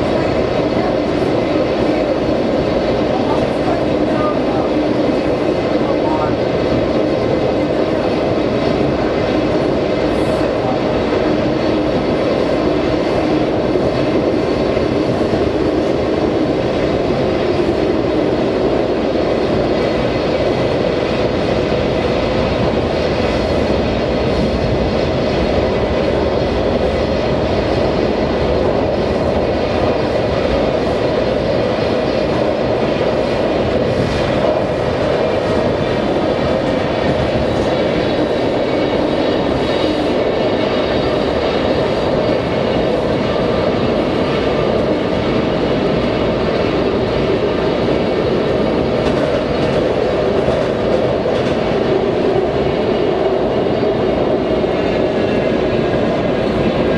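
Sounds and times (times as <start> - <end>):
train rumble: 0.0 - 56.9.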